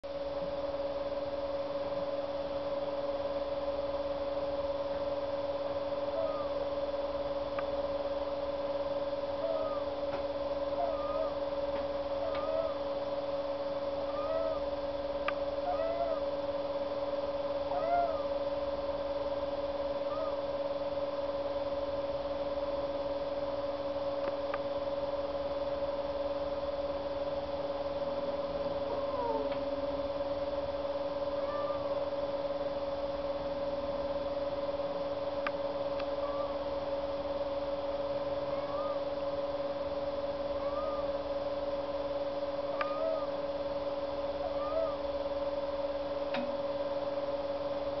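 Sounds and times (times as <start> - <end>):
steady electrical hum: 0.0 - 48.0
prairie dog squeaky snoring: 6.1 - 6.6, 9.4 - 9.9, 10.7 - 11.4, 12.2 - 12.9, 14.0 - 14.7, 15.6 - 16.3, 17.7 - 18.4, 20.1 - 20.4, 28.9 - 29.5, 31.4 - 32.0, 36.2 - 36.6, 38.5 - 39.1, 40.6 - 41.2, 42.7 - 43.4, 44.4 - 45.0.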